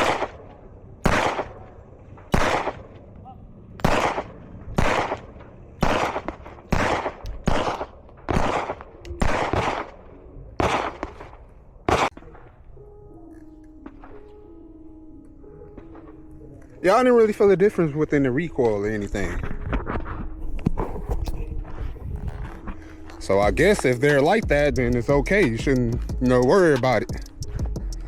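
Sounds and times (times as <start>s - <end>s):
handgun shots: 3.8s - 5.2s, 5.8s - 10.0s, 10.6s - 12.3s.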